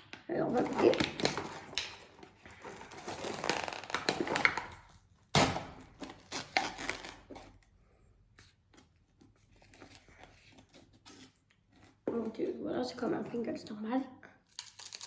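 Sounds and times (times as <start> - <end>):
foil seal crinkling and tearing: 0.5 - 7.6, 14.5 - 15.0
crisp crunching and chewing: 0.9 - 5.0, 14.5 - 15.0.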